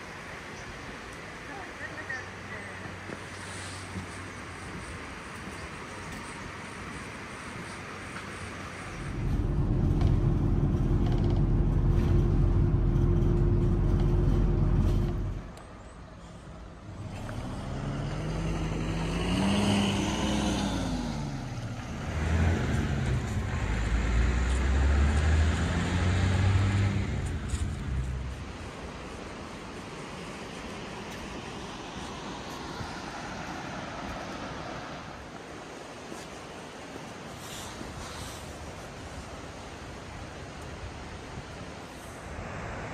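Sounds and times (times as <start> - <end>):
loud low engine drone: 8.8 - 15.7, 16.8 - 28.6
vehicle engine passing: 8.9 - 15.6, 16.8 - 28.7.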